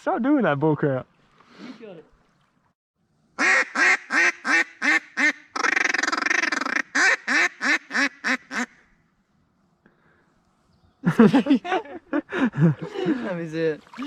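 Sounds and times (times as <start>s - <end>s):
duck call feeding chatter: 3.4s - 8.7s
duck call quacks: 3.4s - 8.8s.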